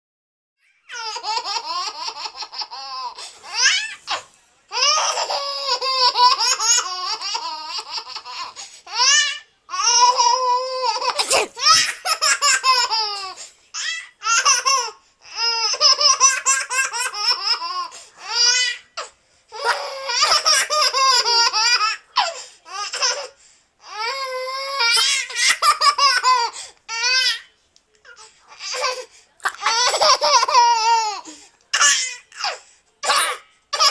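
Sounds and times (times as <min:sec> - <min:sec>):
baby laughing: 0:00.8 - 0:09.1, 0:09.7 - 0:13.4, 0:14.2 - 0:18.8, 0:19.6 - 0:23.3, 0:24.8 - 0:27.2, 0:28.7 - 0:31.2.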